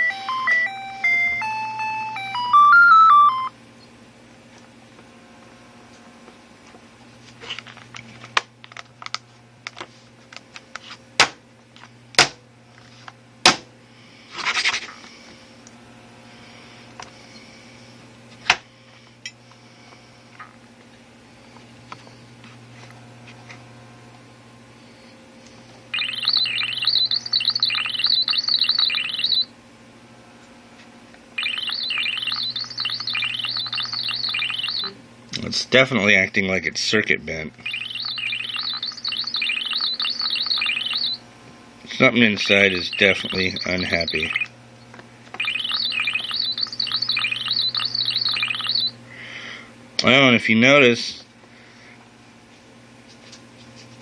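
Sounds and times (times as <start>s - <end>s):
alarm clock warbling beeps: 0.0s - 3.5s, 25.9s - 29.5s, 31.4s - 35.0s, 37.6s - 41.2s, 42.4s - 44.5s, 45.4s - 48.9s.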